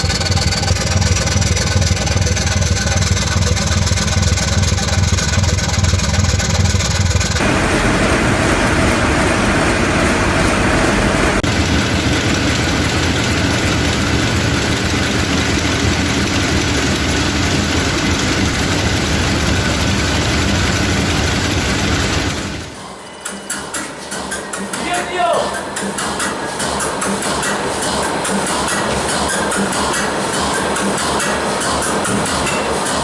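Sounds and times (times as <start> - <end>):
large diesel engines running: 0.0 - 23.0.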